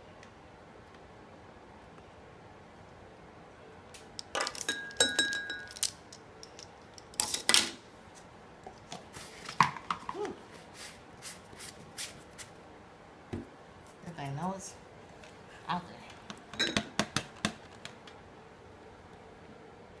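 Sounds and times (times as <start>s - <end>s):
kitchen utensils clinking: 4.4s - 5.8s, 16.5s - 17.0s.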